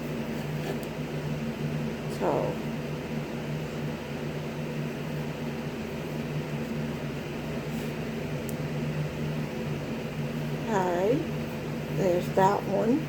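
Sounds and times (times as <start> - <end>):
appliance humming: 0.0 - 13.0.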